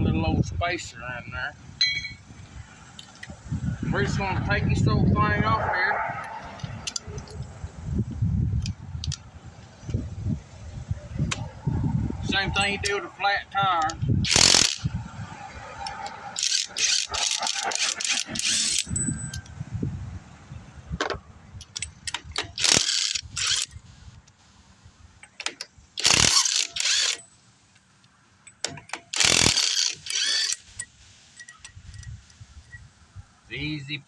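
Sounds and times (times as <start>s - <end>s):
hand tools ratcheting and clanking: 13.8s - 14.9s, 15.9s - 19.5s, 21.6s - 23.8s, 25.2s - 27.4s, 28.4s - 32.2s.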